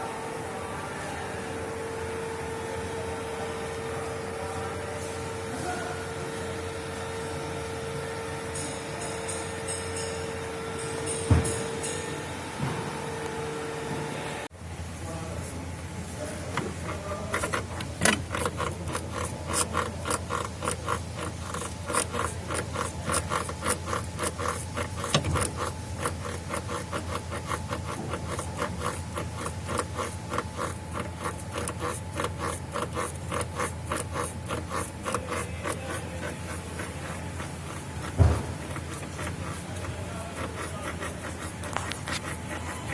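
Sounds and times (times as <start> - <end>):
car knocking and rattling: 17.5 - 35.2.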